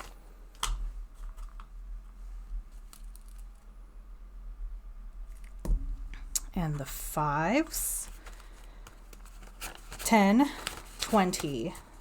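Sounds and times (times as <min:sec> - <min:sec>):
low electrical hum: 0:00.0 - 0:12.0
banknotes rustling: 0:06.7 - 0:12.0.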